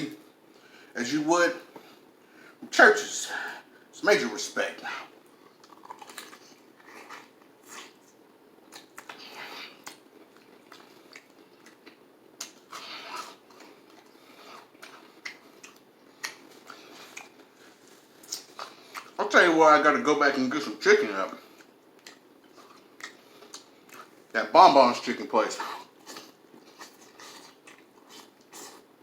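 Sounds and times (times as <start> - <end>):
person chewing food: 4.9 - 19.2, 21.4 - 24.3, 25.6 - 29.0.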